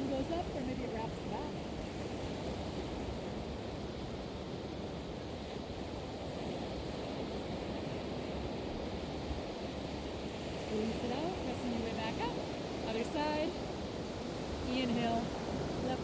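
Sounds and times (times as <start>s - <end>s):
ocean waves breaking: 9.0s - 16.0s.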